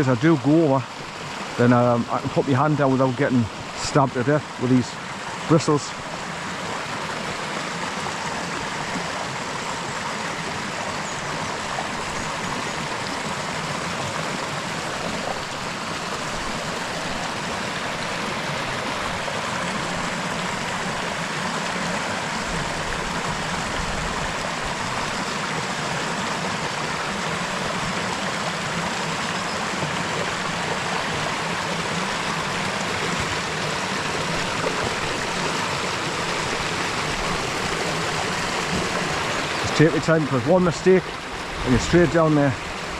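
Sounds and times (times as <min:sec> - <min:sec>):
stream rushing over boulders: 0:00.0 - 0:42.9.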